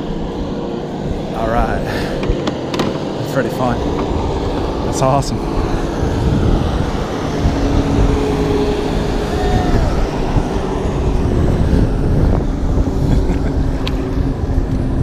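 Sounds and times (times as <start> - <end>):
boat engine droning: 0.0 - 15.0
wind buffeting microphone: 0.0 - 15.0.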